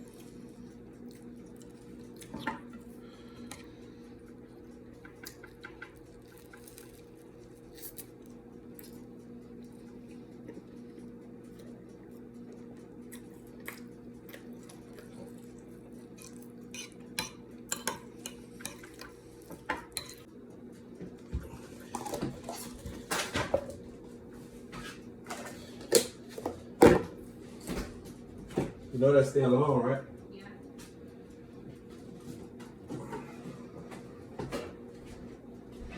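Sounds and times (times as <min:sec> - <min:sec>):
steady low hum: 0:00.0 - 0:35.9
cutlery clinking on dishes: 0:16.2 - 0:20.3.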